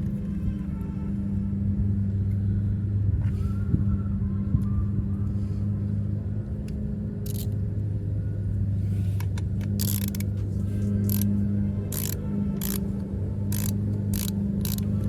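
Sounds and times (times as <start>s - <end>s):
wrench clicking and scraping: 7.2s - 7.6s, 9.6s - 10.3s, 11.0s - 15.0s.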